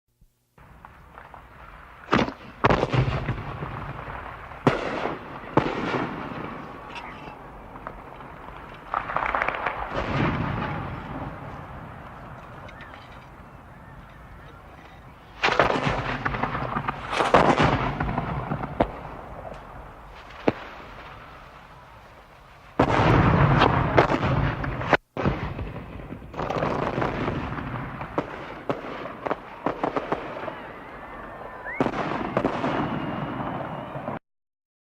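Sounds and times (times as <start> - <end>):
loud rumbling explosions: 0.6 - 34.2
gunshots: 2.0 - 13.2, 15.3 - 19.4, 22.8 - 30.7, 31.7 - 34.2.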